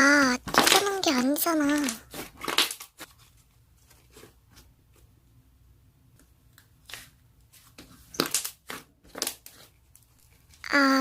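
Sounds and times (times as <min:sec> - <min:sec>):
slime squishing by hand: 0:00.2 - 0:05.2, 0:06.0 - 0:10.8.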